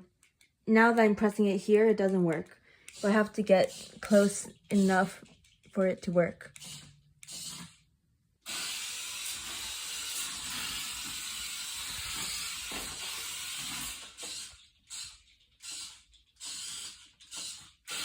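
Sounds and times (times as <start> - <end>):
small electric motor whirring: 2.9 - 5.2, 6.5 - 7.8, 8.4 - 18.0.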